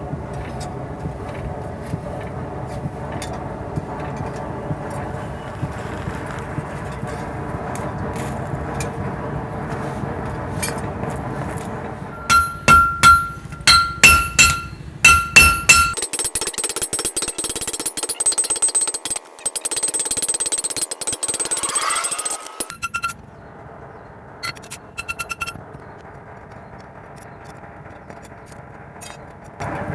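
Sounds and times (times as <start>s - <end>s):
hammer striking steel on anvil: 12.1s - 22.7s
rapid metal ticking clatter: 12.2s - 22.7s.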